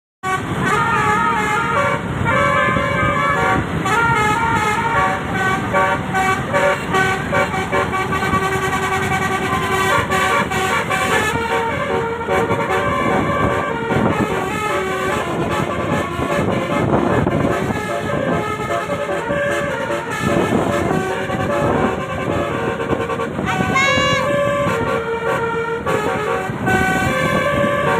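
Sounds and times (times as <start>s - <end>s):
bus engine running: 0.2s - 27.9s
multi-tone musical bus horn: 0.2s - 27.9s.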